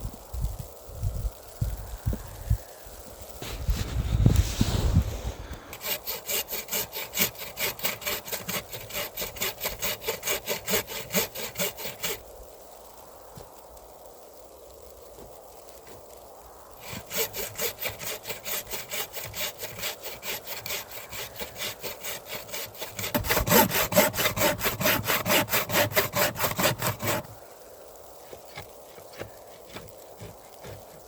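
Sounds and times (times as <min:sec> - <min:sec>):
hand saw cutting wood: 0:05.0 - 0:12.2, 0:16.8 - 0:27.4, 0:28.3 - 0:31.0.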